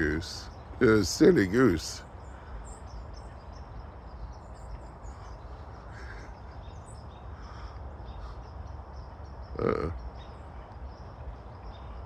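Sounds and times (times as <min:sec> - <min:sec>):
faint goose calls: 0:00.0 - 0:03.3, 0:05.0 - 0:08.8, 0:09.4 - 0:10.7.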